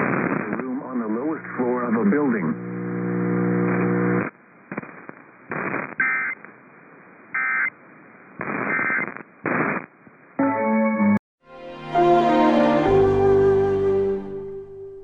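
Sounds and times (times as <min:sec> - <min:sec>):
faint radio hiss: 0:00.0 - 0:10.4
short electronic data bursts: 0:05.6 - 0:06.4, 0:07.4 - 0:07.7, 0:08.5 - 0:09.9.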